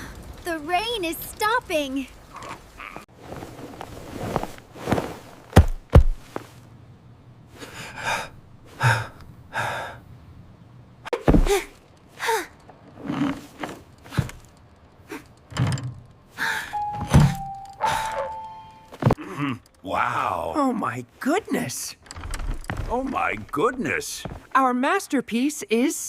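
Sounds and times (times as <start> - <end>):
dull thuds and knocks: 5.5 - 6.4, 11.1 - 11.8
steady ringing tone: 16.7 - 19.0.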